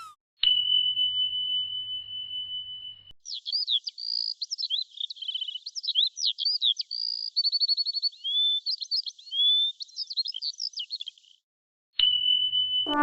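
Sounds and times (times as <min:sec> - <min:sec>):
songbird chirping and trilling: 0:03.2 - 0:11.4.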